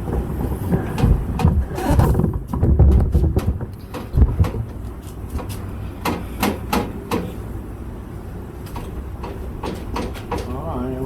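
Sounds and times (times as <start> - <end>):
knocks and taps on metal: 2.4 - 4.8, 5.4 - 7.3, 8.7 - 10.5.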